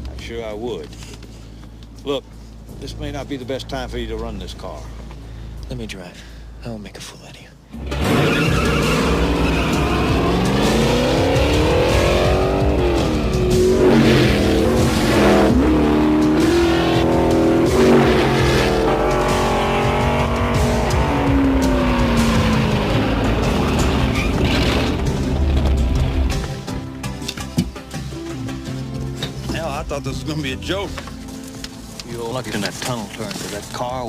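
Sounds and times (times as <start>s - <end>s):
race car engines revving: 7.8s - 26.6s
trailer music: 7.8s - 31.8s.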